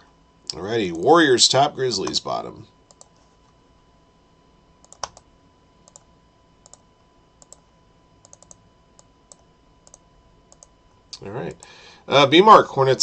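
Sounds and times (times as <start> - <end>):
computer mouse clicking: 2.9 - 3.2, 4.8 - 6.8, 7.4 - 7.6, 8.2 - 10.8.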